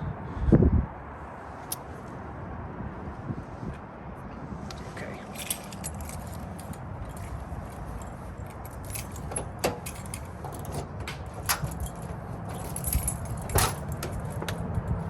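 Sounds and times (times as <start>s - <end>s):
low steady rumble: 5.3s - 15.0s
metallic clicks and jingles: 5.3s - 15.0s.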